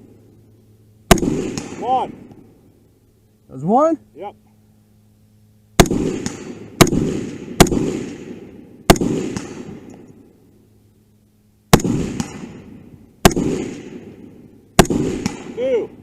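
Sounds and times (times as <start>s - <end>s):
echoing gunshots: 1.0s - 2.4s, 5.8s - 10.0s, 11.7s - 16.0s.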